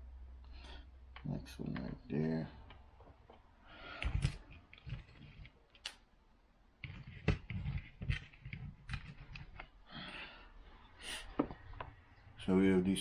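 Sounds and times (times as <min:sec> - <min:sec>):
small screws and plastic clicking: 0:02.6 - 0:06.1, 0:06.8 - 0:09.8.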